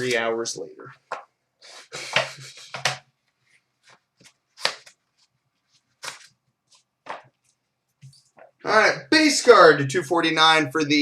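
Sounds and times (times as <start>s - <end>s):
trading cards swishing and clicking: 6.0s - 7.2s.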